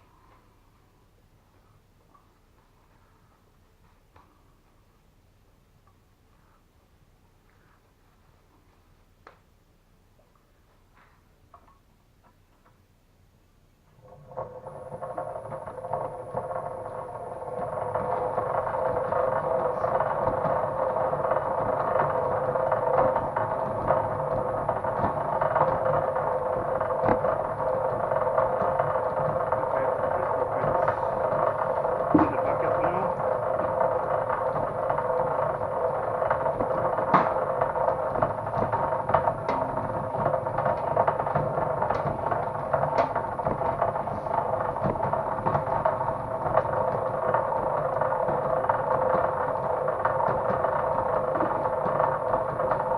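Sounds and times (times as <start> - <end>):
wire stripping machine motor hum: 14.0 - 52.9
clicks and knocks: 17.5 - 52.9.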